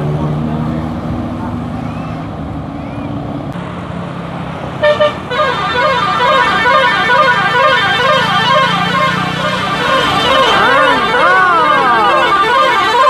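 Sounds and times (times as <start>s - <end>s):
bus engine hum: 0.0s - 13.0s
musical bus horn warbling tune: 4.8s - 13.0s.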